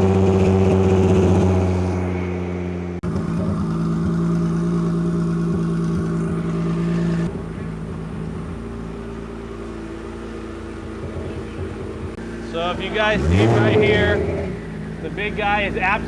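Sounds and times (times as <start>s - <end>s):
car engine running steadily: 0.0s - 16.0s.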